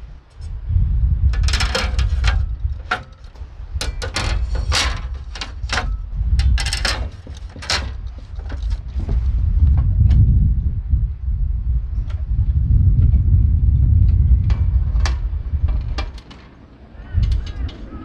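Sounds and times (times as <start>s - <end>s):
rustles: 0.0s - 10.3s
steady low rumble: 0.0s - 18.0s.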